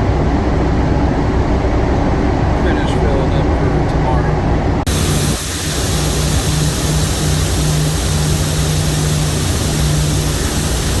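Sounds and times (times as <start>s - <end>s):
vehicle engine humming: 4.8s - 11.0s
loud constant hiss: 4.9s - 11.0s.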